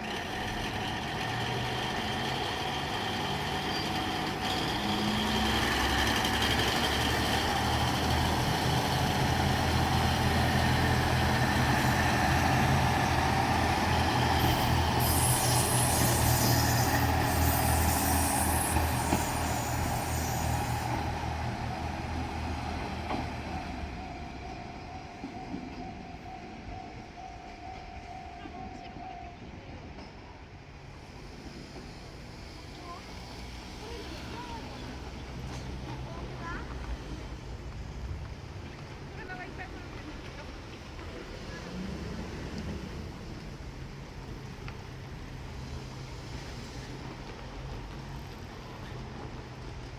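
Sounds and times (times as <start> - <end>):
diesel railcar passing: 0.0 - 49.9
wheels on rails: 0.0 - 49.9
hiss: 11.8 - 21.5
level crossing warning bell: 22.8 - 30.2.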